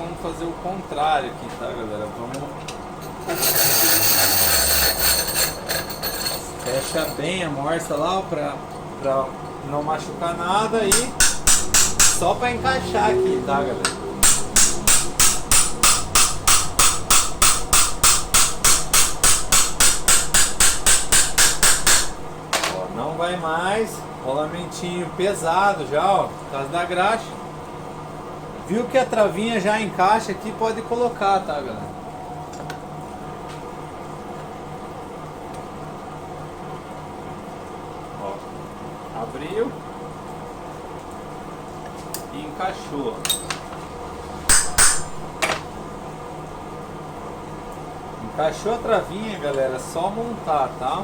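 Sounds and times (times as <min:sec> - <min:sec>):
fan or small motor humming: 0:00.0 - 0:51.0
hammer tapping on metal: 0:10.9 - 0:12.4, 0:13.8 - 0:22.8, 0:44.5 - 0:45.6.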